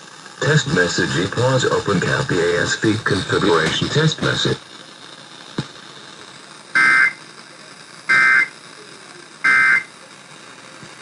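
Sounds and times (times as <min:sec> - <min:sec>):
two-tone digital data bursts: 0:06.8 - 0:07.3, 0:08.1 - 0:08.6, 0:09.4 - 0:10.0.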